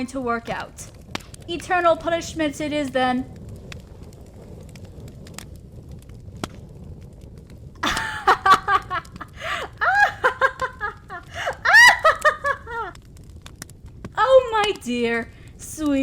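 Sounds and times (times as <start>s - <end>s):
fire crackling and popping: 0.0s - 16.0s
woman giggling: 7.8s - 12.9s.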